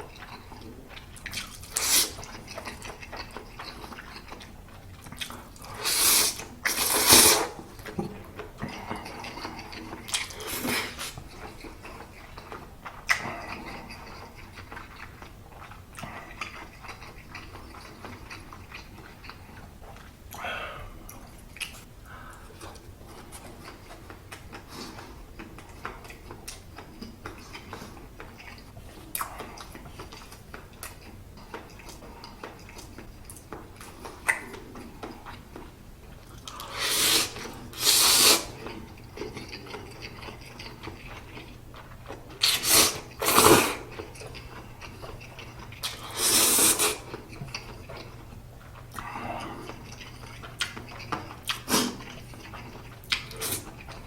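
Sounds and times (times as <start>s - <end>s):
close chewing of noodles: 0.0s - 54.0s
wet mouth clicks and smacks: 9.8s - 13.7s, 25.4s - 38.1s, 49.7s - 54.0s
breathy rushes: 20.4s - 21.0s.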